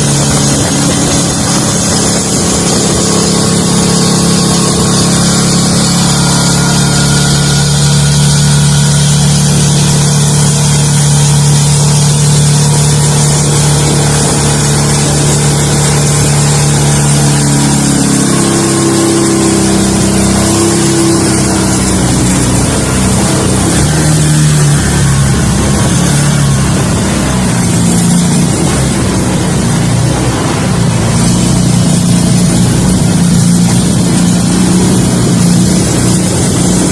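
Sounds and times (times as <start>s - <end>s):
boat motor running: 0.0s - 36.9s
wind and water rushing: 0.0s - 36.9s.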